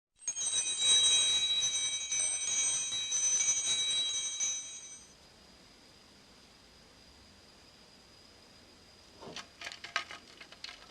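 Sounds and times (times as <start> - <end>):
high bell-like chimes: 0.2 - 5.1.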